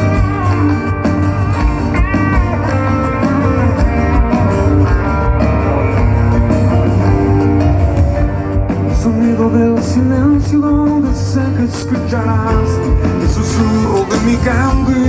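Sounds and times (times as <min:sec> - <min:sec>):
bass: 0:00.0 - 0:15.0
drums: 0:00.0 - 0:15.0
lead guitar melody: 0:00.0 - 0:15.0.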